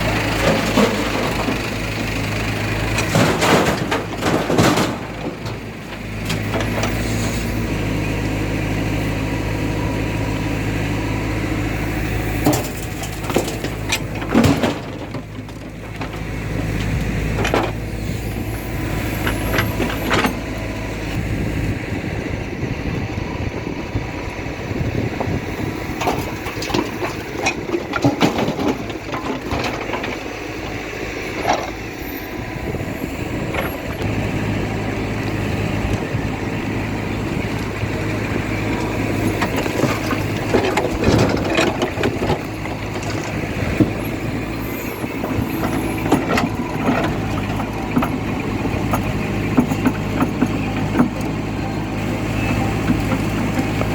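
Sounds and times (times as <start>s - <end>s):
heavy diesel engine running: 0.0s - 53.9s
metallic clanks and thuds: 0.2s - 7.0s, 12.4s - 17.8s, 25.2s - 30.7s, 38.7s - 44.2s.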